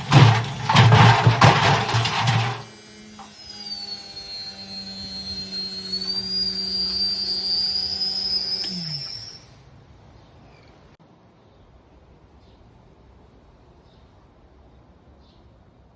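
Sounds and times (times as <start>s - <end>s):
washing machine motor hum: 0.0s - 9.4s
washing machine bearing whine: 0.0s - 9.6s.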